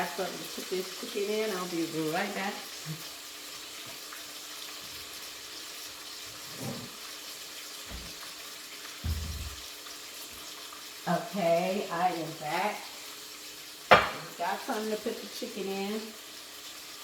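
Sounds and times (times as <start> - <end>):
food sizzling in hot grease: 0.0 - 17.0
dull thump: 9.0 - 9.6, 13.9 - 14.2
short knock: 9.0 - 9.6, 13.9 - 14.2.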